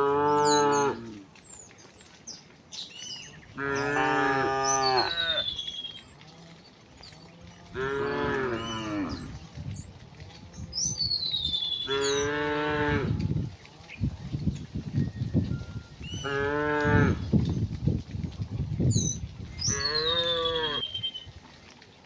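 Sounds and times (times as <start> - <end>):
cows mooing: 0.0 - 1.4, 3.3 - 9.8, 10.4 - 14.0, 15.9 - 17.3, 19.6 - 21.0.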